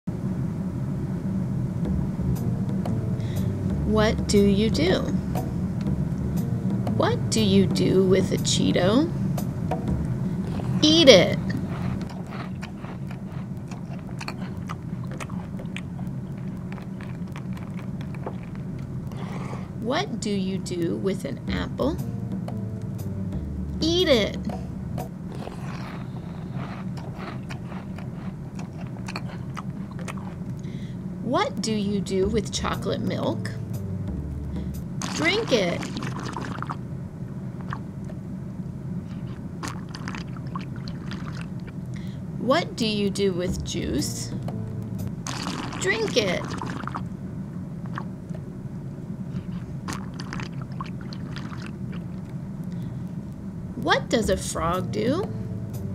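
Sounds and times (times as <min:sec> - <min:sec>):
low steady hum: 0:00.0 - 0:55.9
gulping and swallowing: 0:10.4 - 0:19.8, 0:25.3 - 0:30.7, 0:35.0 - 0:36.8, 0:39.1 - 0:41.9, 0:45.2 - 0:47.1, 0:47.8 - 0:48.1, 0:49.4 - 0:52.4
person munching crunchy snack: 0:11.4 - 0:19.8, 0:25.3 - 0:30.8, 0:35.0 - 0:36.8, 0:39.1 - 0:41.8, 0:45.2 - 0:47.1, 0:49.5 - 0:52.2.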